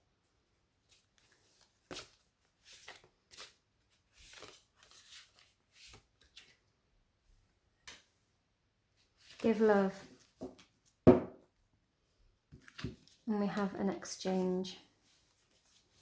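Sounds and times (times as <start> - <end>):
cards shuffling and rustling: 0.9 - 6.7, 12.5 - 13.2, 15.0 - 16.0.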